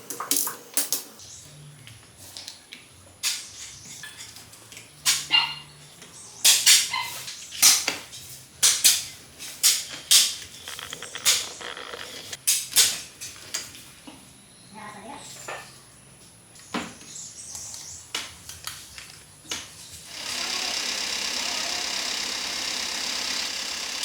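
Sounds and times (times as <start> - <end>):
metal parts and tools clinking: 9.7 - 12.4.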